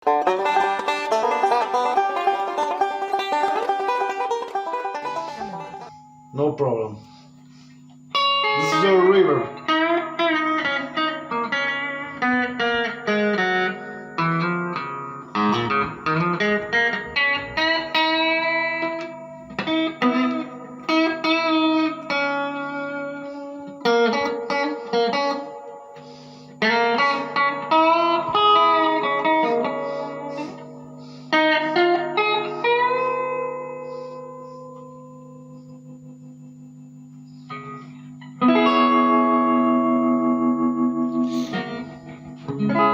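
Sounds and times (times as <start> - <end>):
clean electric guitar with reverb: 8.1 - 36.4, 37.1 - 42.9.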